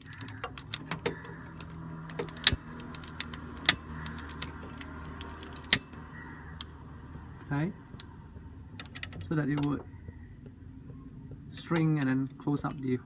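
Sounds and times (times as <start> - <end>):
sharp clicks: 0.0 - 6.0.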